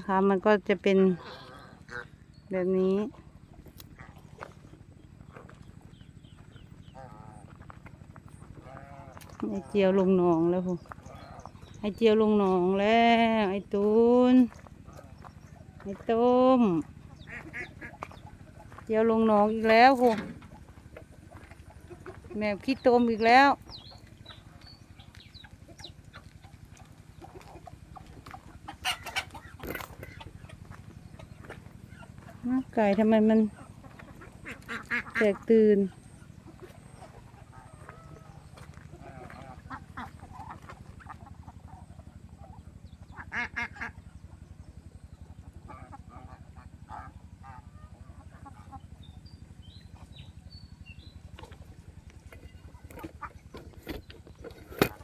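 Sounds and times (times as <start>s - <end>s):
chickens clucking: 0.0s - 55.0s
steady low hum: 0.0s - 55.0s
ducks quacking: 0.1s - 50.4s, 51.2s - 55.0s.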